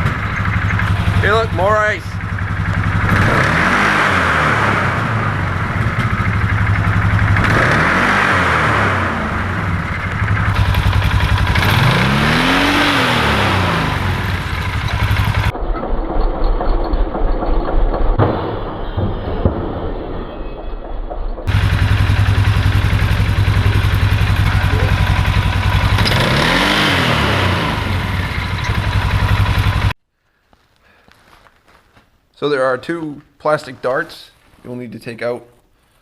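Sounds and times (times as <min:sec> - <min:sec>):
engine idling and revving: 0:00.0 - 0:19.6, 0:21.4 - 0:30.0.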